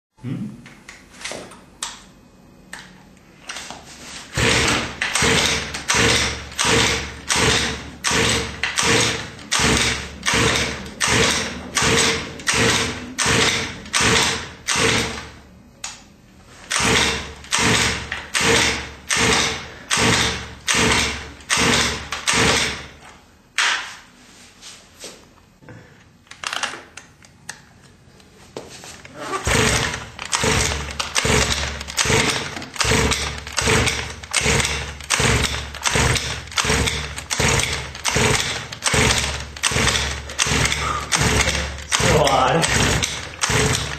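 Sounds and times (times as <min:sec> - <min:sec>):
engine cranking: 0:04.4 - 0:15.4, 0:16.7 - 0:22.9, 0:29.3 - 0:43.9
recoil pull-starter yanked: 0:29.4 - 0:43.9.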